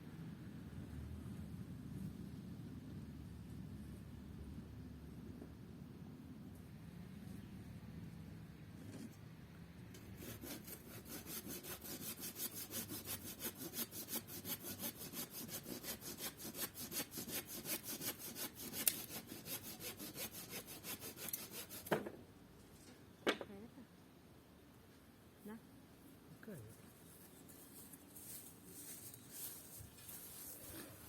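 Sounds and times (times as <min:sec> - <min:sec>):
hand saw cutting wood: 0:10.0 - 0:22.0.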